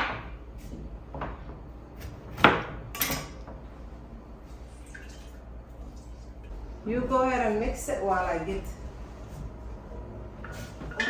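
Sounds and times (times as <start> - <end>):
kitchenware clinking and knocking: 2.4 - 3.5.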